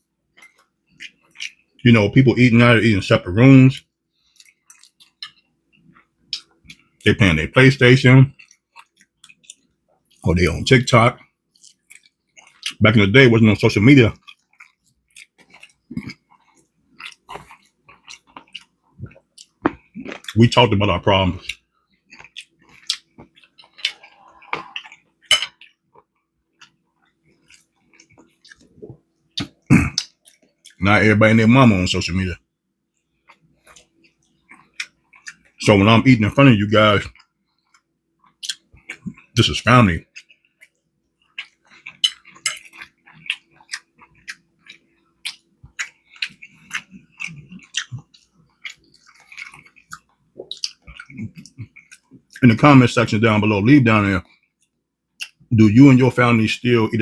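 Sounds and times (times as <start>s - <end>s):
chewing with wet mouth smacks: 0.3s - 1.8s, 3.7s - 7.0s, 8.3s - 10.2s, 11.2s - 12.8s, 14.0s - 20.6s, 21.4s - 30.8s, 33.0s - 35.6s, 37.0s - 52.7s, 54.2s - 55.5s
eating utensils clinking on a plate: 23.7s - 25.8s.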